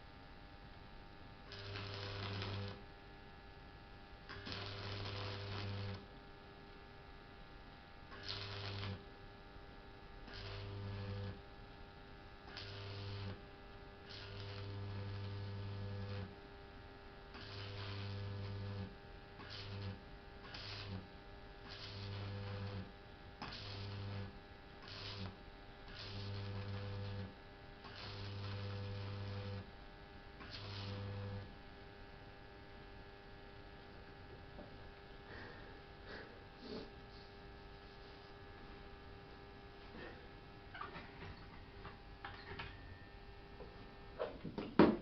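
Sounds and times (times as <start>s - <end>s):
faint steady hum: 0.0s - 45.0s
welder arc mains hum: 0.0s - 45.0s
arc crackle: 1.4s - 2.9s, 3.7s - 6.9s, 8.1s - 31.6s.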